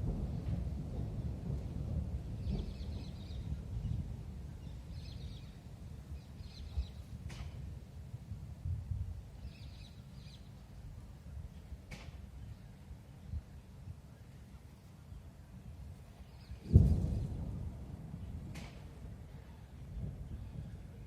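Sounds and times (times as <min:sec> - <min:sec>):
faint sharp clicks: 0:18.5 - 0:18.9.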